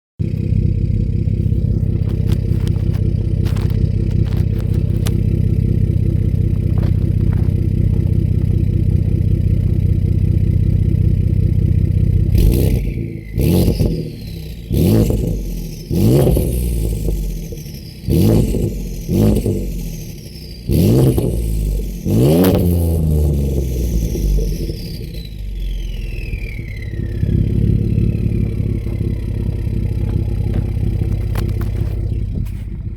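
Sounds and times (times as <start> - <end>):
truck engine idling: 0.2 - 15.9, 23.4 - 32.9
engine revving: 0.2 - 32.9.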